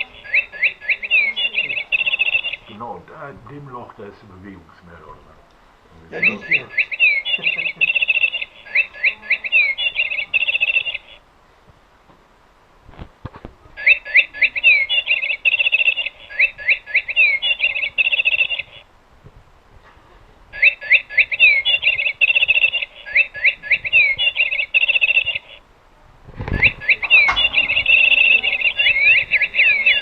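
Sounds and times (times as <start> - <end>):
electronic bird-song chirps and trills: 0.0 - 2.8, 6.2 - 11.2, 13.8 - 18.8, 20.5 - 25.6, 26.4 - 30.0.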